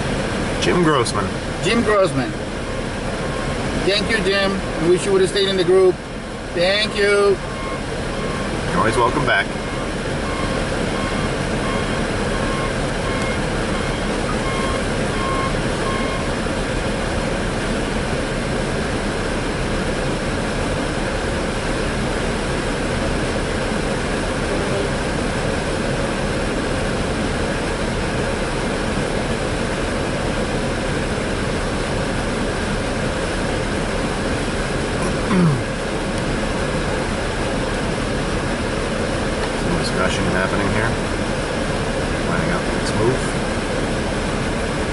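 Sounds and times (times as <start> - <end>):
reversing beeper: 3.2 - 3.6, 6.9 - 16.4.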